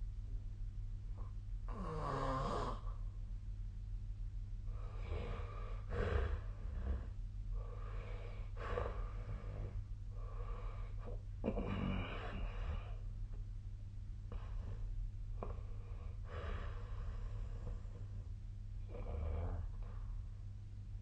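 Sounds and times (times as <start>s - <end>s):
steady low hum: 0.0s - 21.0s
heavy rough breathing: 4.7s - 13.0s.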